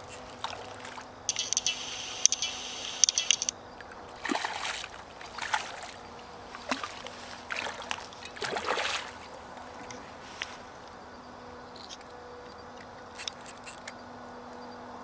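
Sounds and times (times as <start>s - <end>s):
water splashing: 0.0s - 1.6s, 3.8s - 10.8s
high buzzing rattle: 0.0s - 8.4s, 9.2s - 14.0s.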